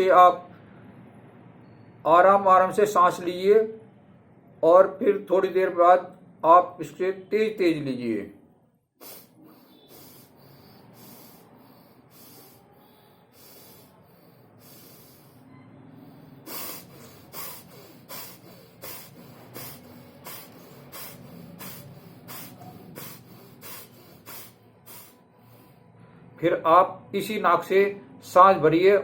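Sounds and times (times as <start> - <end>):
hissing nasal breathing: 9.0 - 26.0.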